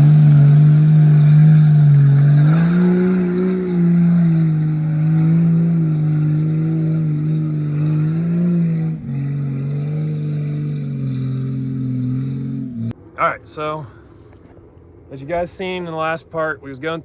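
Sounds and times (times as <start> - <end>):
engine running under throttle: 0.0 - 13.0.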